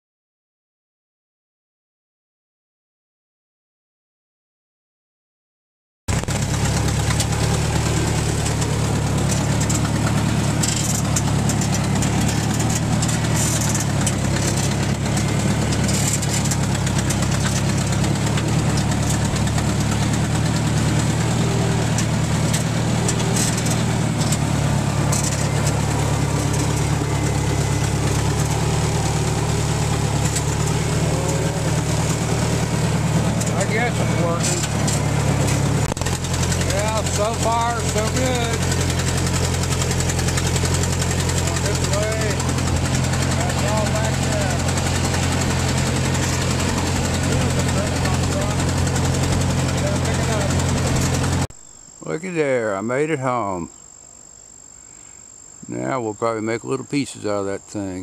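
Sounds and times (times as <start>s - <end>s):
tractor engine running: 6.1s - 53.5s
light rattles: 6.3s - 51.5s.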